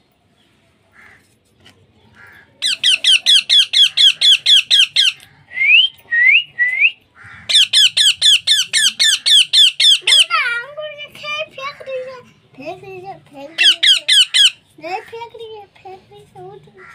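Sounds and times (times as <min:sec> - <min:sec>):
parrot chick squawking: 0:02.2 - 0:05.3, 0:07.2 - 0:10.6, 0:13.5 - 0:15.1
rising whistled calls: 0:02.6 - 0:10.3.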